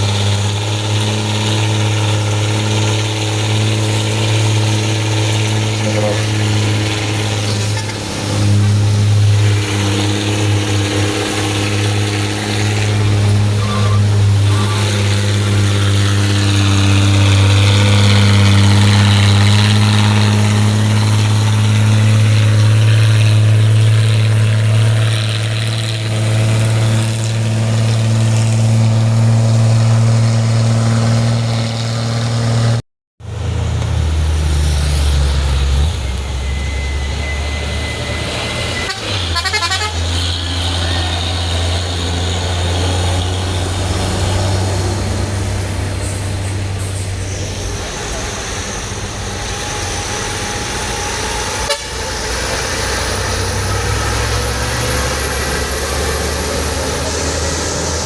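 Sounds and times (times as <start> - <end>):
heavy diesel engine droning: 0.0 - 58.0
vehicle horn: 38.0 - 40.5, 51.5 - 52.2.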